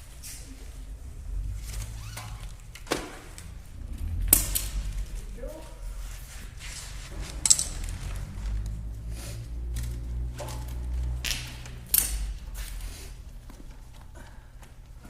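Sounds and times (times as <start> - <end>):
low steady rumble: 0.0 - 15.0
metallic clanks and knocks: 7.1 - 8.8.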